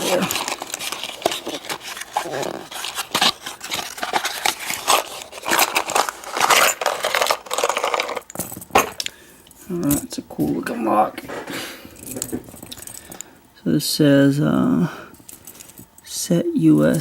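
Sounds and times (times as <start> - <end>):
packaging rustling and tearing: 0.0 - 9.0.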